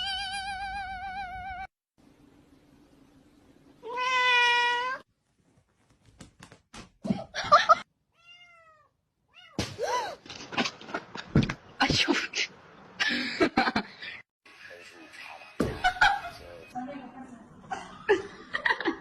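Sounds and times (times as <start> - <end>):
cat meowing: 3.8 - 5.0, 8.1 - 9.6.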